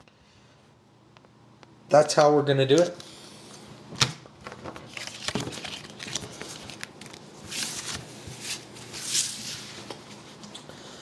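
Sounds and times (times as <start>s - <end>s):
packaging rustling: 4.4s - 10.0s.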